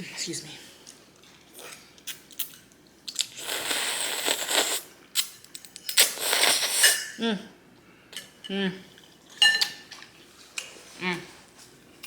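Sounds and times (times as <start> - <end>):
noodle slurp: 3.2 - 4.9, 6.0 - 7.0.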